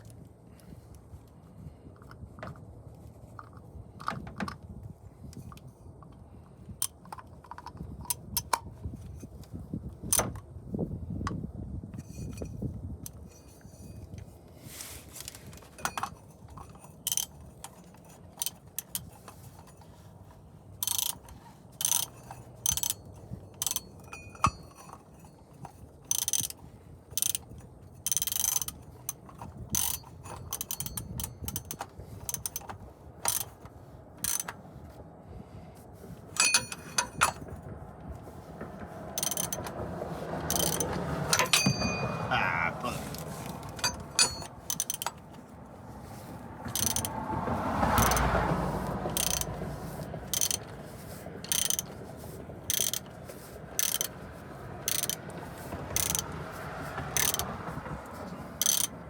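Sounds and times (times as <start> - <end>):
tools clattering: 12.0 - 34.5, 36.3 - 37.6, 38.2 - 39.7, 40.4 - 47.2
ratchet wrench clicking: 15.8 - 34.6, 36.3 - 37.5, 39.2 - 39.8, 40.4 - 59.0.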